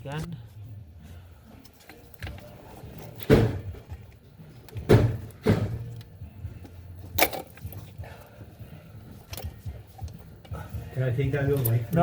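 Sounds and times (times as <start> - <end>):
sharp knocks and clunks: 4.8 - 5.9.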